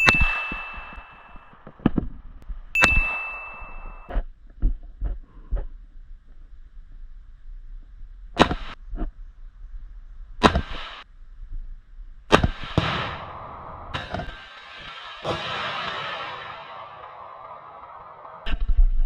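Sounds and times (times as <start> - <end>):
gunshots: 14.0 - 18.5.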